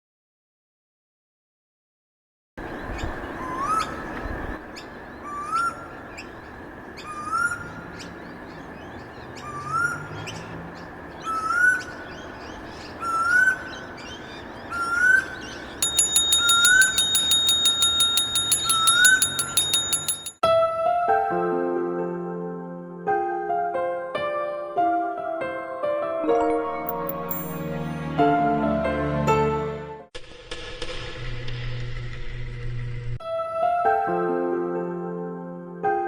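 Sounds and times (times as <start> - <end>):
steady ringing tones: 15.7 - 20.4, 26.9 - 27.7
rapid high ticking: 15.8 - 20.4.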